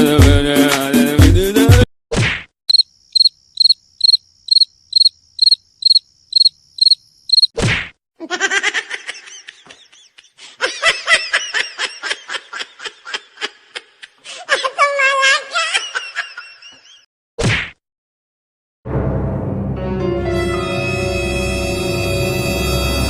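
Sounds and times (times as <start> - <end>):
cricket chirping: 2.7 - 7.6.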